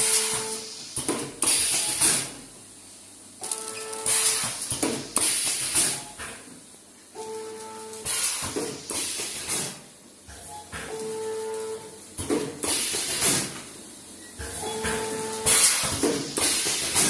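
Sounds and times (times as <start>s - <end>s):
packing machine hissing: 0.0s - 2.3s, 3.5s - 6.1s, 7.8s - 9.9s, 12.4s - 13.6s, 14.4s - 17.0s
short machine tone: 3.4s - 4.4s, 7.2s - 8.0s, 10.4s - 12.0s, 14.2s - 15.8s.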